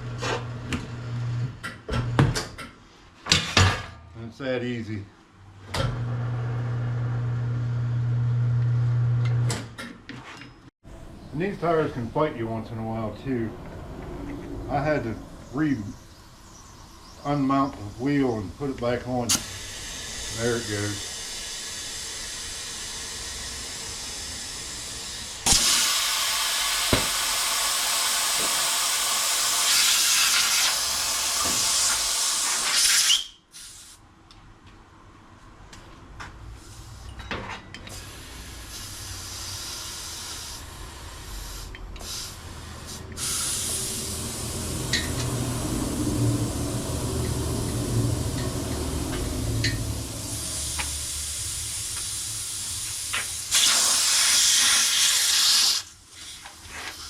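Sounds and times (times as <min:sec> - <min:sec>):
compressed air hissing: 0:17.2 - 0:34.0, 0:37.9 - 0:57.0
low hum: 0:43.3 - 0:51.8.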